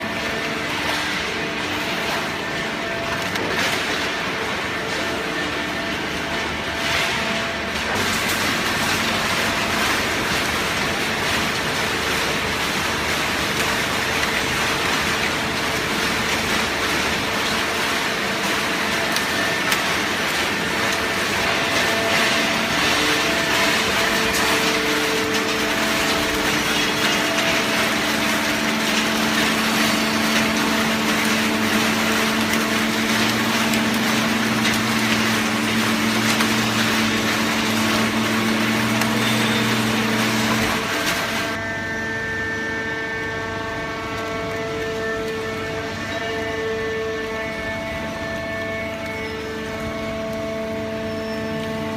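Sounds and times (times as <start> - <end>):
hydraulic baler machine humming: 0.0 - 51.9.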